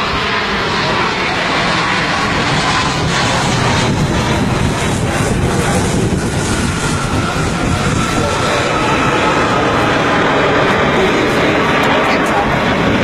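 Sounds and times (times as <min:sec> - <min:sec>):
airplane engines rumbling: 0:00.0 - 0:13.0.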